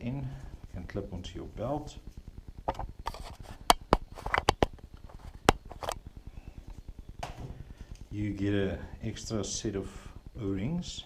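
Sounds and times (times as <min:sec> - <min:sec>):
sharp clicks and taps: 0:02.6 - 0:06.0.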